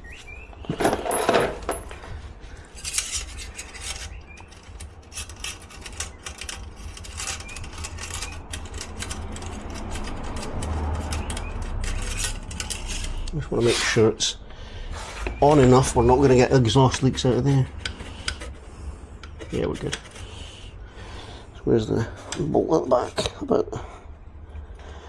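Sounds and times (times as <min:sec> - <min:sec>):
metal pipe scraping: 0:00.0 - 0:14.2, 0:14.9 - 0:20.8.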